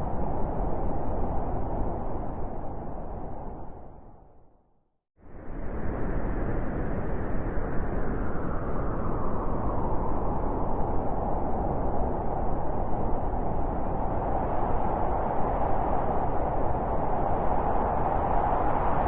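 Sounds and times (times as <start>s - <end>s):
blizzard wind howling: 0.0s - 4.6s, 5.2s - 19.0s.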